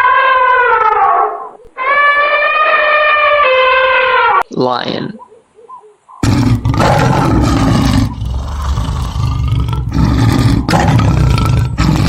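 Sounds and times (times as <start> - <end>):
lion roaring: 6.2 - 12.0.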